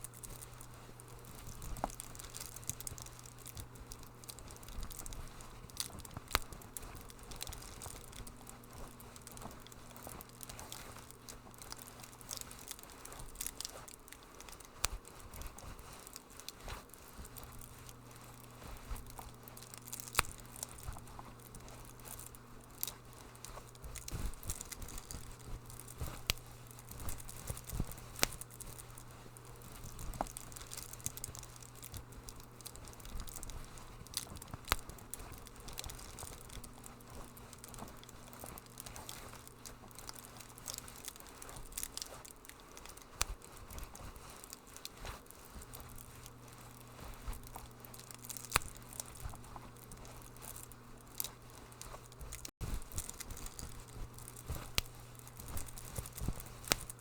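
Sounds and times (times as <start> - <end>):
steady low hum: 0.0 - 57.0
wood fire crackling: 0.0 - 57.0.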